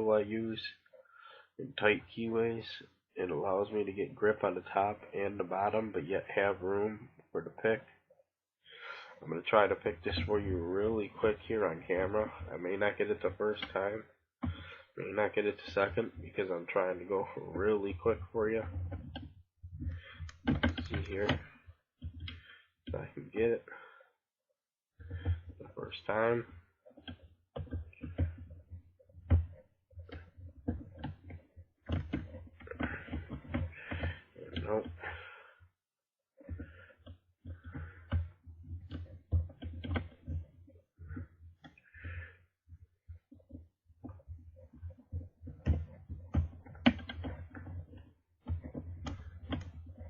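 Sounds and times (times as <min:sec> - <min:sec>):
lock pick clicks and scrapes: 0:18.7 - 0:22.4
lock pick clicks and taps: 0:45.5 - 0:47.8.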